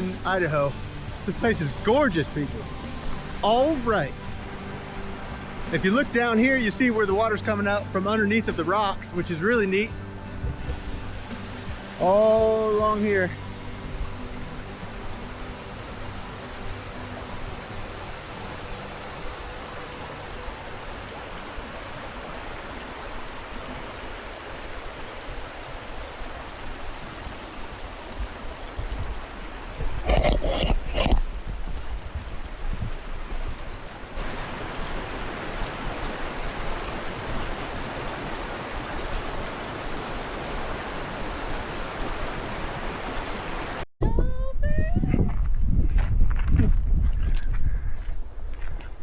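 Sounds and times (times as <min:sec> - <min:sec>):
spring water rushing over rocks: 0:00.0 - 0:43.9.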